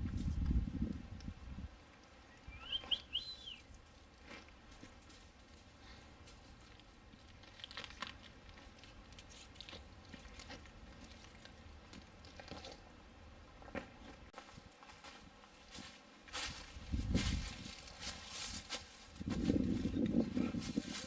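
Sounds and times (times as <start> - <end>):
footsteps crunching on dirt trail: 13.8 - 21.0.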